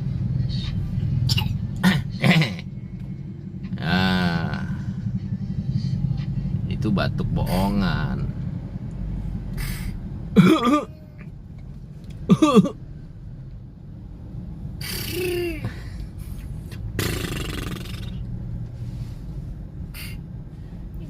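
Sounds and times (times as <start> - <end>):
car cabin hum: 10.2 - 21.0
child pretend coughing: 10.4 - 11.1.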